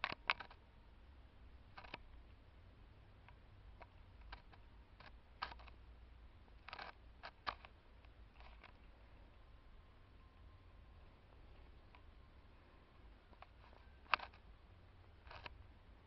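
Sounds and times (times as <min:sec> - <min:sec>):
rats chewing and scrabbling: 0:00.0 - 0:00.6, 0:01.7 - 0:02.1, 0:03.2 - 0:05.8, 0:06.6 - 0:09.0, 0:13.2 - 0:14.5, 0:15.2 - 0:15.6.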